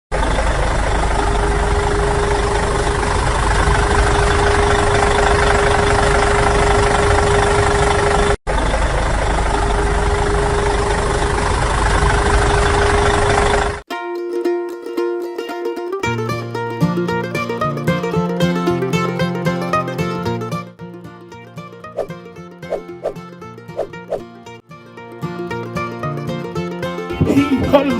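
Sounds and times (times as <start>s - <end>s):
engine idling: 0.1s - 13.8s
plucked-string music: 13.9s - 27.9s.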